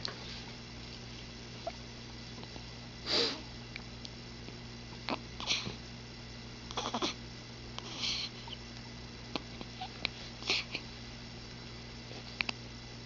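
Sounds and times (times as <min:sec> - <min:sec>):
pet hiccuping: 0:06.7 - 0:07.2.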